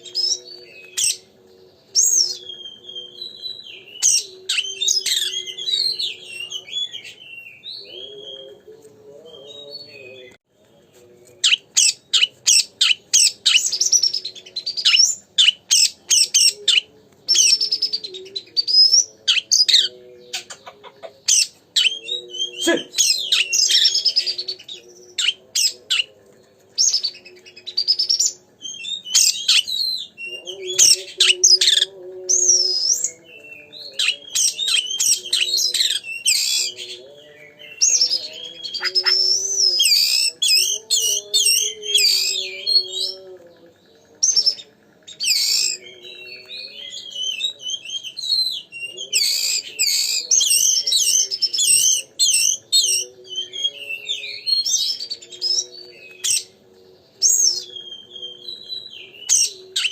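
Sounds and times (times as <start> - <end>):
bird singing whistles and trills: 0.0 - 8.7, 11.4 - 20.6, 21.3 - 26.1, 26.8 - 59.9.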